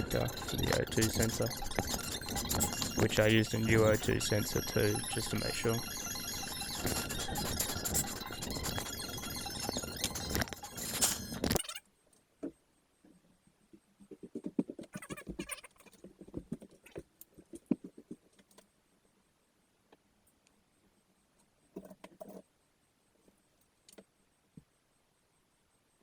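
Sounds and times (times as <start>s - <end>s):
small parts clicking and rustling: 0.0s - 12.6s
quick patter of ticks: 13.7s - 18.8s.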